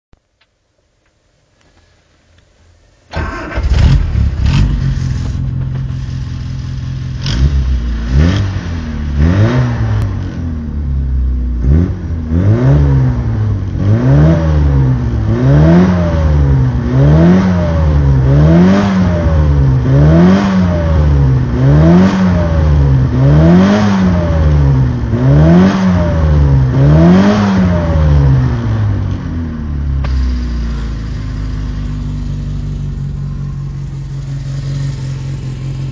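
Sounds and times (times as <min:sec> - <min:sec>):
car engine starting and revving: 0:03.1 - 0:35.9.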